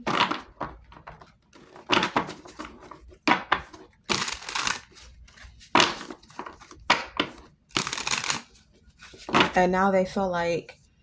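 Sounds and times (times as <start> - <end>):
cards being shuffled: 3.6 - 9.6.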